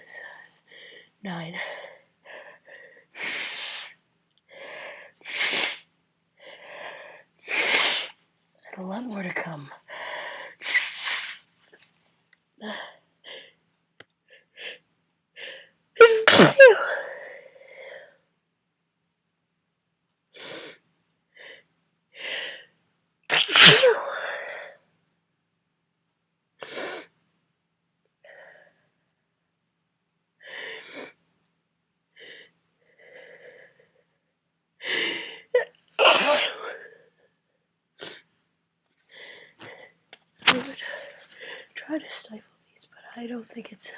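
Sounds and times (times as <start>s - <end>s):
person sneezing: 16.0s - 16.9s, 23.3s - 24.0s, 36.0s - 36.8s, 40.4s - 41.0s.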